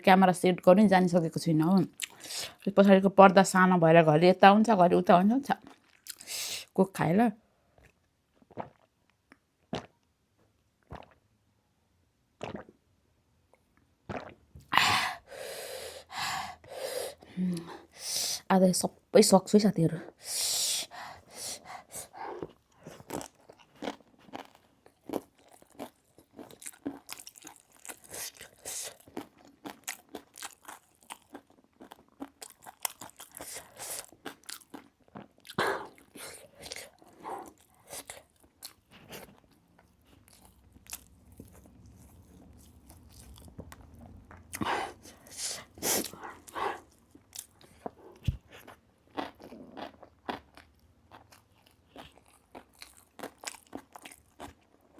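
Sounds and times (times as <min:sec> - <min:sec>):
crunching and chewing snack: 0:22.2 - 0:45.3, 0:46.0 - 0:54.9.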